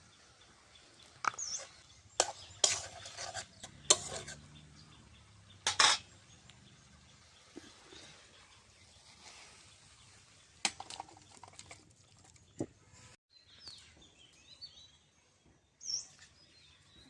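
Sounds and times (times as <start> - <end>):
pots and utensils clattering: 2.2 - 4.6, 5.6 - 6.1.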